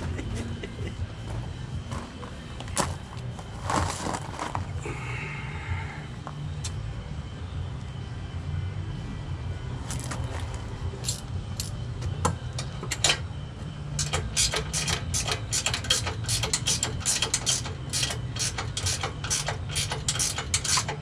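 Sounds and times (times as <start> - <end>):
low steady hum: 0.0 - 21.0
ratchet wrench clicking: 11.0 - 11.8, 14.0 - 21.0.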